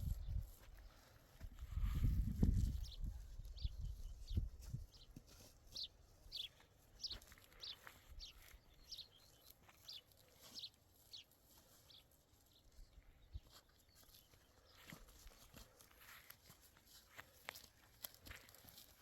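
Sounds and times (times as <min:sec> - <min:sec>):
small bird chirping: 0:05.7 - 0:15.0.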